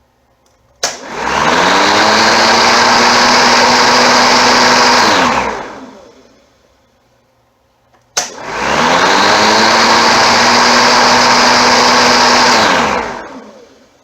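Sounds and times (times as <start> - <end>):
electric lawn mower whine: 1.0 - 6.2, 8.3 - 13.8.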